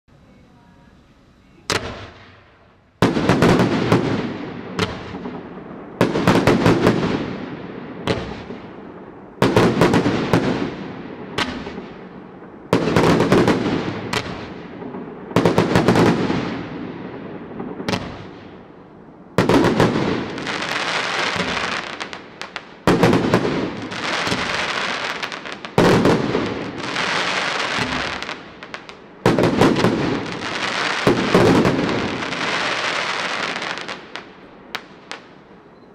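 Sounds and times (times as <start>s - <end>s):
firework bangs: 1.7s - 35.4s
firework hissing crackle: 19.4s - 34.3s.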